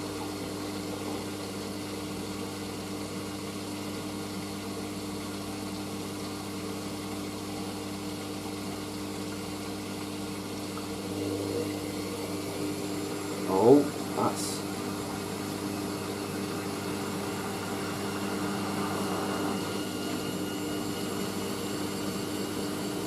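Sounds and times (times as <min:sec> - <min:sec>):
washing machine drum spinning: 0:05.3 - 0:23.0.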